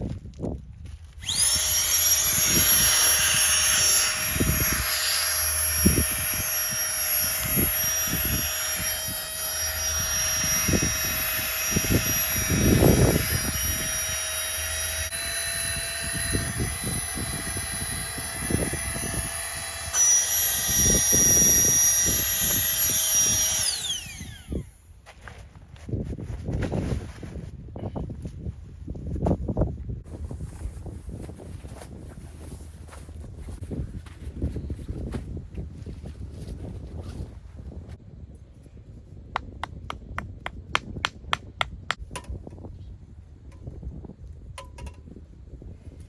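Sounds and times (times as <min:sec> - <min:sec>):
small electric motor whining: 0:01.1 - 0:24.8.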